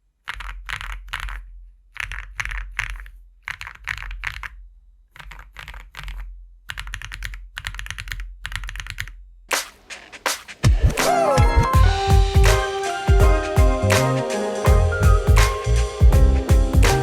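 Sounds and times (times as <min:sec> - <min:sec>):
mechanical keyboard typing: 0:02.0 - 0:04.5, 0:05.2 - 0:09.2.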